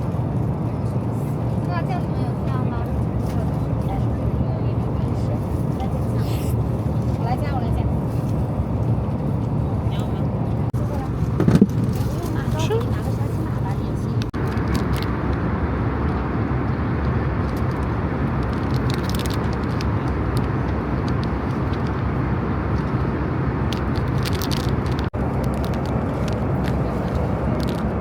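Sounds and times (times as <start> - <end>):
airliner cabin drone: 0.0 - 28.0
light clicks and scrapes of eating: 17.4 - 22.0, 23.7 - 27.9.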